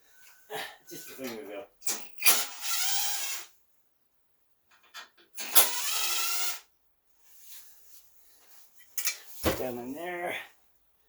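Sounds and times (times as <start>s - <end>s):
power driver spinning screws: 1.9s - 3.5s, 5.4s - 6.6s.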